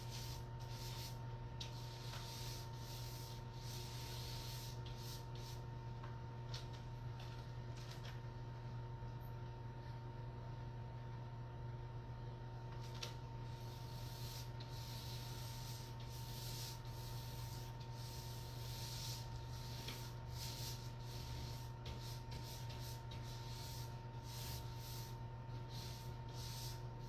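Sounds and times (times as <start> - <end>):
paint roller on a wall: 0.0 - 5.7, 12.8 - 27.0
low electrical hum: 0.0 - 27.0.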